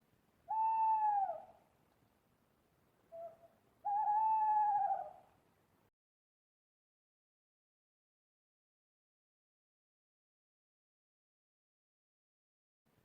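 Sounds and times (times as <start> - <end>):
owl hooting: 0.5 - 1.6, 3.1 - 5.3.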